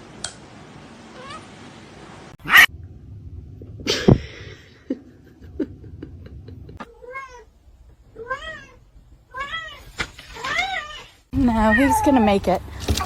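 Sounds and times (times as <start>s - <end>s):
cat meowing: 1.2s - 1.5s, 6.9s - 7.5s, 8.2s - 12.2s.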